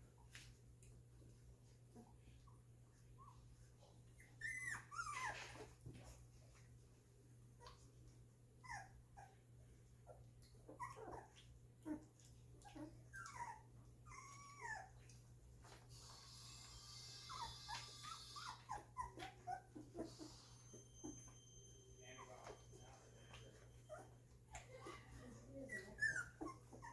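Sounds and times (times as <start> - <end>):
puppies whimpering and squeaking: 2.0 - 6.2, 8.6 - 9.4, 10.1 - 26.9.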